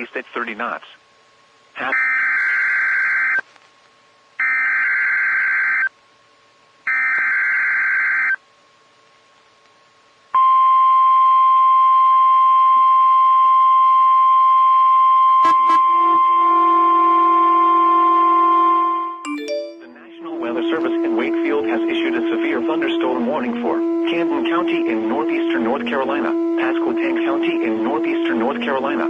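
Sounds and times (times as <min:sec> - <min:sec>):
steady loud warning tone: 0:01.8 - 0:03.4, 0:06.9 - 0:08.4, 0:10.4 - 0:29.0
lower second tone: 0:10.4 - 0:29.0.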